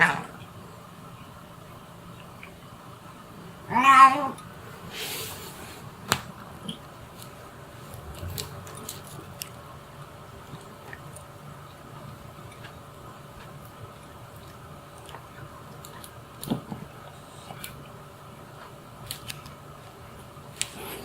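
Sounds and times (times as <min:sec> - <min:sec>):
cat meowing: 0:03.7 - 0:04.4
soft brushing noise: 0:04.6 - 0:06.0.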